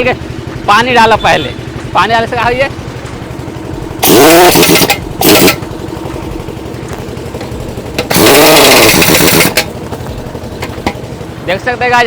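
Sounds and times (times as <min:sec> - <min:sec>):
engine running: 0:00.0 - 0:12.0
impact wrench bursts: 0:03.2 - 0:11.7.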